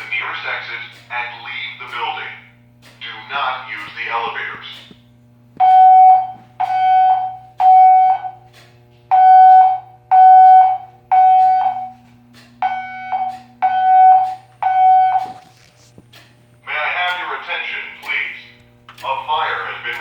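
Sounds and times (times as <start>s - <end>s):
fire alarm beeps: 5.6s - 8.5s, 9.1s - 15.6s.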